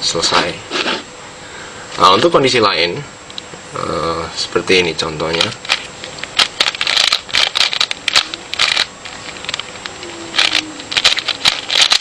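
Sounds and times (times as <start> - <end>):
puzzle cube turning clicks: 5.3 - 12.0.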